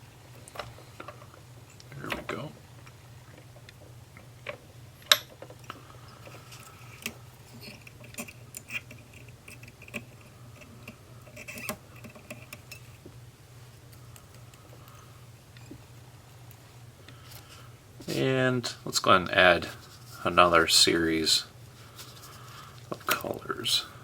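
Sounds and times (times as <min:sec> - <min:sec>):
low steady hum: 0:00.0 - 0:24.0
light scraping and rustling: 0:15.6 - 0:18.4, 0:19.0 - 0:23.9.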